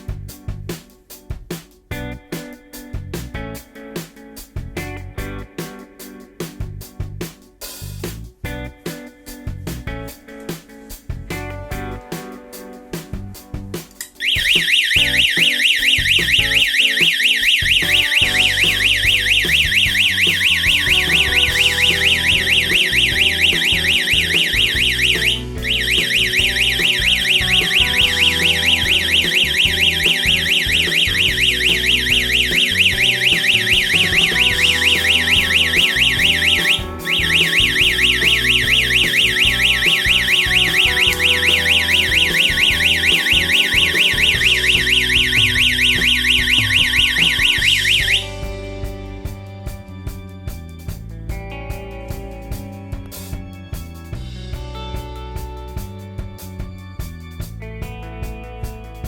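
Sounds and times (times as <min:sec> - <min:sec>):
faint background music: 0:00.0 - 0:59.0
alarm siren warbling: 0:14.2 - 0:48.5.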